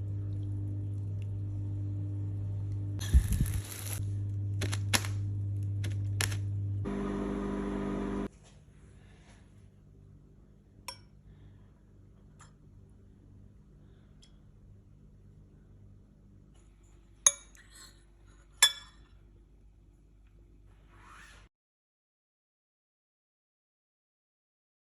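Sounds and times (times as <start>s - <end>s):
microwave oven humming: 0.0s - 8.3s.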